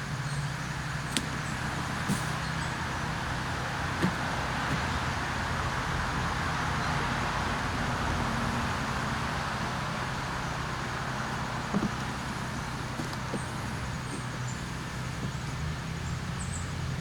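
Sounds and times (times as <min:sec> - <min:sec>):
steady hiss: 0:00.0 - 0:07.4.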